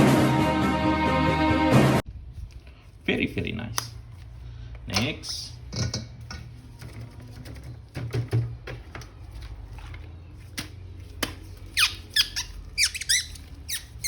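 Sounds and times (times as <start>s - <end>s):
short high falling squeaks: 11.8s - 14.0s.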